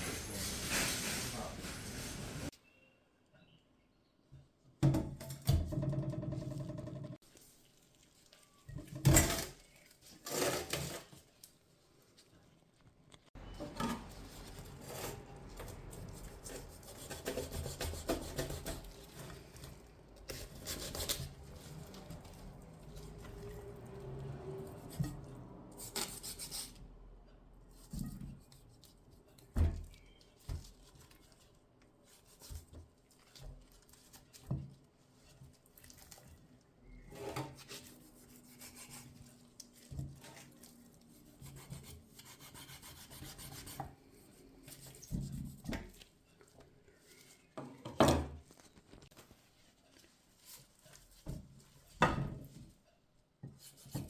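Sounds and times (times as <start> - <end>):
rubbing and rustling: 0.0 - 2.5, 7.2 - 25.3, 48.4 - 52.8.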